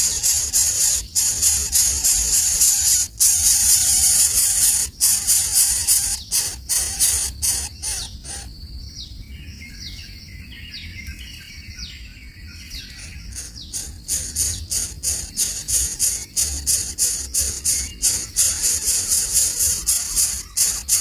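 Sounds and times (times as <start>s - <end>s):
bird chirping: 0.0s - 21.0s
loud harsh high-pitched noise: 13.3s - 21.0s.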